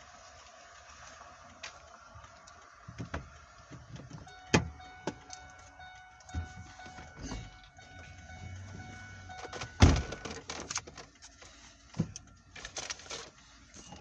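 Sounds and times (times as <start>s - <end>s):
faint steady tone: 1.9s - 14.0s
clicks and handling noise: 9.4s - 14.0s
heavy thump: 9.6s - 10.3s.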